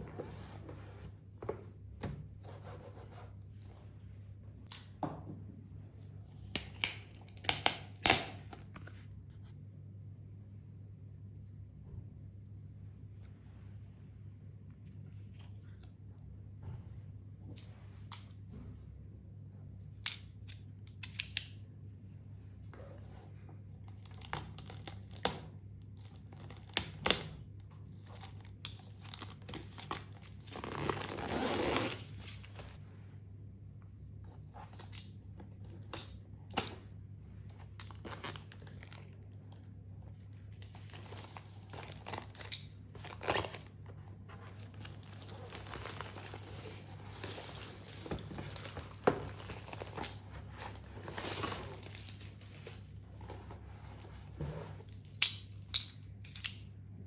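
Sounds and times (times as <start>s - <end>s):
wrapping crinkling and tearing: 28.1s - 32.8s, 40.5s - 43.7s, 44.4s - 53.4s.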